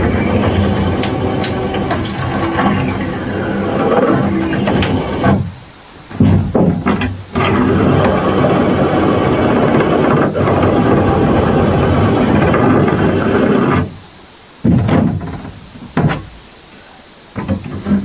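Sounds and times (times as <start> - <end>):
loud motor running: 0.0 - 5.4.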